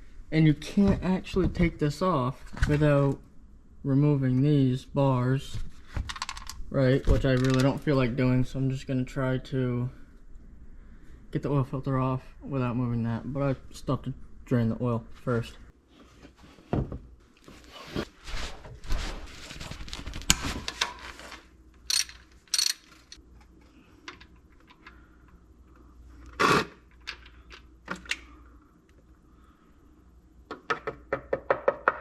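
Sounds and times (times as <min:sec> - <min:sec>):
hand tools rustling and scraping: 0:17.4 - 0:23.2.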